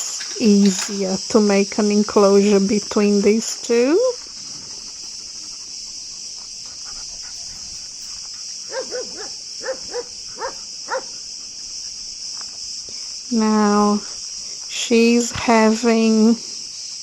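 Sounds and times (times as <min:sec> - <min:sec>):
high insect chorus: 0:00.0 - 0:17.0
dog barking: 0:06.9 - 0:11.2.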